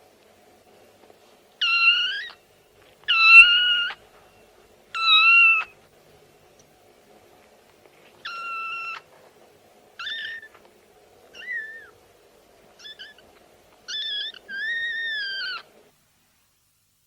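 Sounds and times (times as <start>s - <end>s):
cat meowing: 1.6s - 2.4s, 3.1s - 4.0s, 5.0s - 5.8s, 8.2s - 9.1s, 10.0s - 10.6s, 11.4s - 12.0s, 12.8s - 13.2s, 13.9s - 15.7s.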